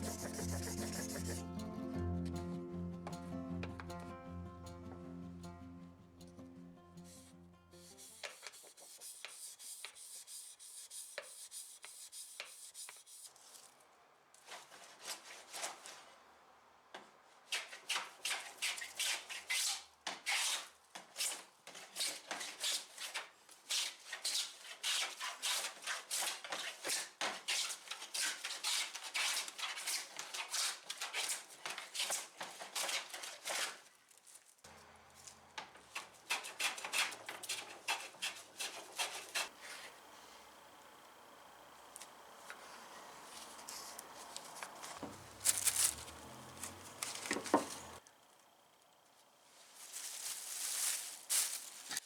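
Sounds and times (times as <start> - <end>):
hand strokes rasping across wood: 0.0 - 1.5.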